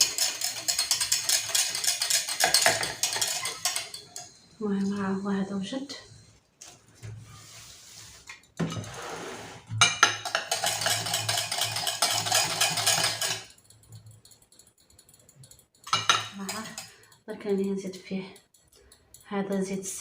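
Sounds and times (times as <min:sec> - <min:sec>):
utensil clinking on pot: 0:00.0 - 0:04.3, 0:09.8 - 0:13.6, 0:15.8 - 0:17.0
spoon scraping in a pot: 0:00.0 - 0:05.2, 0:07.2 - 0:14.2, 0:15.9 - 0:17.0.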